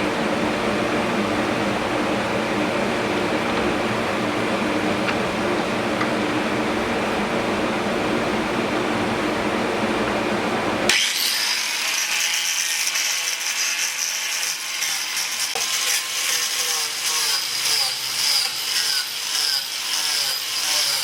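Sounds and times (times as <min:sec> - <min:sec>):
low-pitched machine hum: 0:00.0 - 0:10.9
angle grinder grinding wood: 0:10.9 - 0:21.0.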